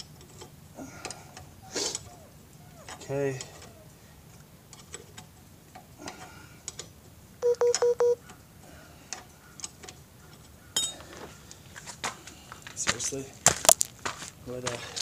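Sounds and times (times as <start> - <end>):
phone short beeps: 7.4 - 8.2.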